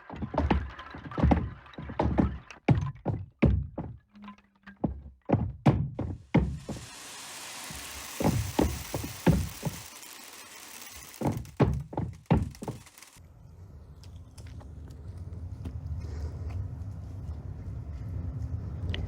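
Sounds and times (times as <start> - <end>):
dull knocks and thuds: 0.0 - 4.0, 4.8 - 6.9, 11.2 - 12.8
steady hiss: 6.5 - 11.3.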